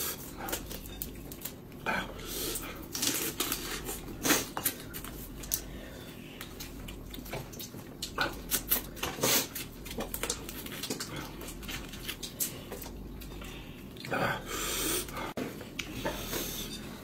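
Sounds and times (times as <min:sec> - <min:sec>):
chewing and lip-smacking: 0:02.5 - 0:14.2, 0:15.0 - 0:16.3.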